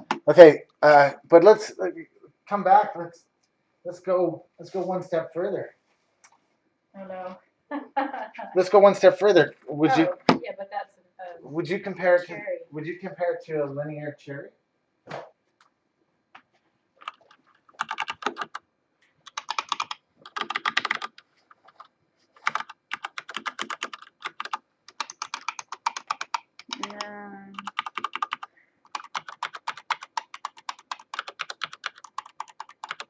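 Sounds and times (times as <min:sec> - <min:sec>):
keyboard typing clicks: 0:17.0 - 0:18.6, 0:19.3 - 0:21.8, 0:22.4 - 0:33.0.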